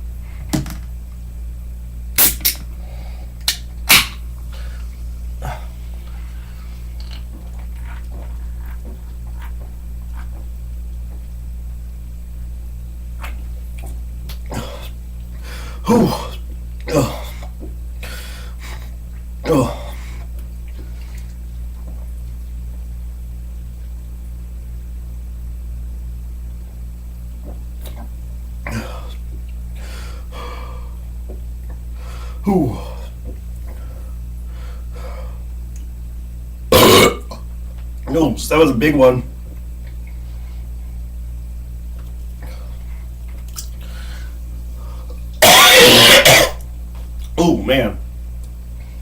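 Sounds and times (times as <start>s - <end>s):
steady low hum: 0.0s - 49.0s
swallowing sounds: 4.5s - 10.6s, 13.1s - 22.0s, 27.4s - 29.8s
person gulping soda: 6.9s - 10.6s, 13.1s - 22.2s, 27.4s - 29.8s, 36.7s - 38.1s, 41.9s - 44.0s, 45.1s - 47.4s
man burping: 15.8s - 17.6s, 19.4s - 20.0s, 32.4s - 33.0s, 36.7s - 37.5s, 45.4s - 46.6s.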